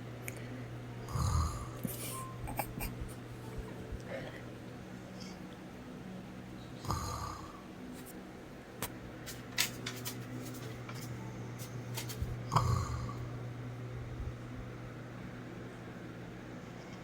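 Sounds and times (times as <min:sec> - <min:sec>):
steady low hum: 0:00.0 - 0:17.0
man snoring: 0:01.0 - 0:02.9, 0:06.8 - 0:07.6, 0:12.5 - 0:13.4.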